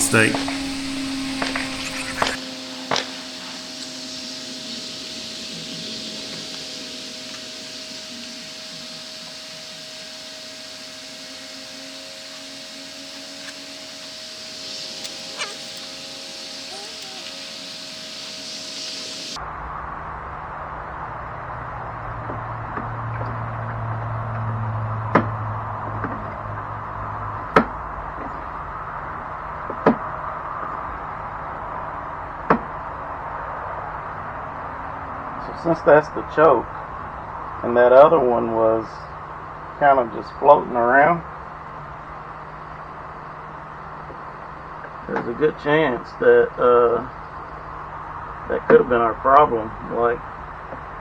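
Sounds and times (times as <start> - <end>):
steady hiss: 0.0 - 19.4
faint hum: 0.0 - 24.2.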